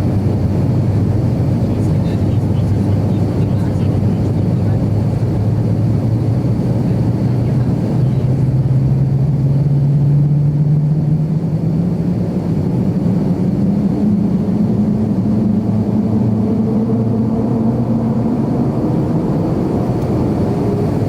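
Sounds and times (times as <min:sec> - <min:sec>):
jet engines rumbling in cabin: 0:00.0 - 0:21.0
low hum rising in pitch: 0:08.1 - 0:21.0.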